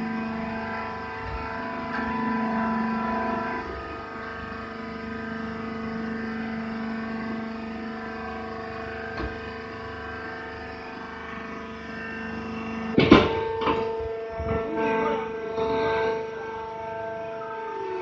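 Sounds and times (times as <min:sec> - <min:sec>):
baler machine hum: 0:00.0 - 0:18.0
knock: 0:13.0 - 0:13.9.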